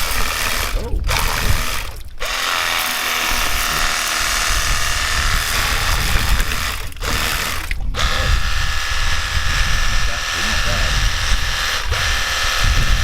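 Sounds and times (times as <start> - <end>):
pressure washer spraying: 0.0 - 13.0.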